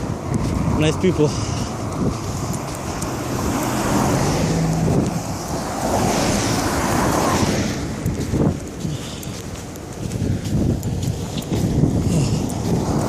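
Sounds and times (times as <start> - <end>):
wind on microphone: 0.0 - 13.0
car passing close by: 0.6 - 8.6, 12.3 - 13.0.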